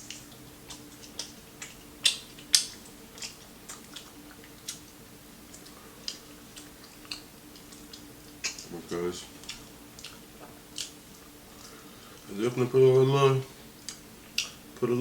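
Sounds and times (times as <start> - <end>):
chewing crispy chicken: 0.0 - 12.4.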